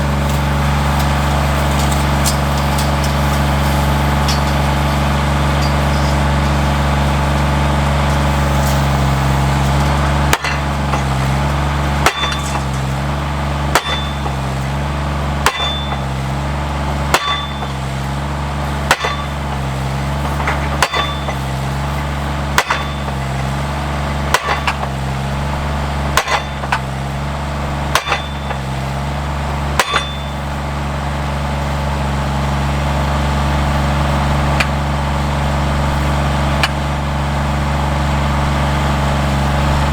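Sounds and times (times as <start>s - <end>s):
post driver engine running: 0.0s - 39.9s
hammer clanging on fence post: 0.3s - 18.2s, 18.8s - 30.8s.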